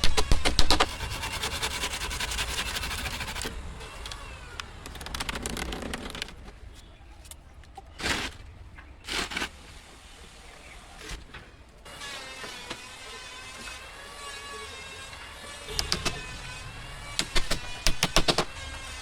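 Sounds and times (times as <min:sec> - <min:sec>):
clicks and scraping: 0:00.0 - 0:09.7, 0:10.9 - 0:19.0
sharp knocks: 0:15.7 - 0:19.0.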